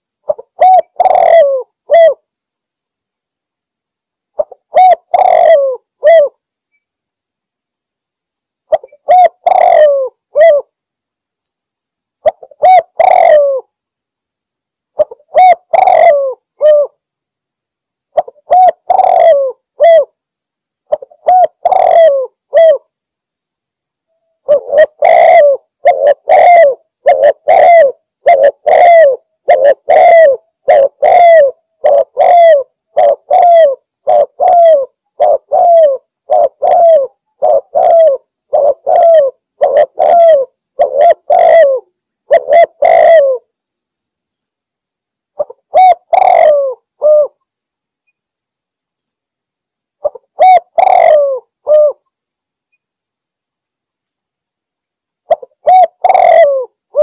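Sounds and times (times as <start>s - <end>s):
dove cooing: 0.2s - 2.2s, 4.4s - 6.4s, 8.7s - 10.7s, 12.2s - 13.7s, 15.0s - 17.0s, 18.1s - 20.2s, 20.9s - 22.9s, 24.4s - 43.5s, 45.4s - 47.4s, 50.0s - 52.1s, 55.3s - 57.0s.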